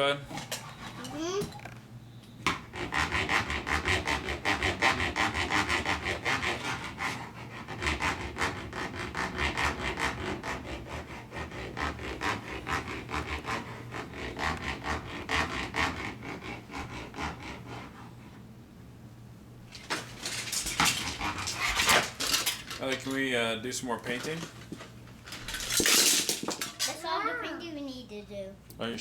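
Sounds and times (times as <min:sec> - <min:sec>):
scraping strokes on wood: 0:02.5 - 0:18.5, 0:19.7 - 0:22.9.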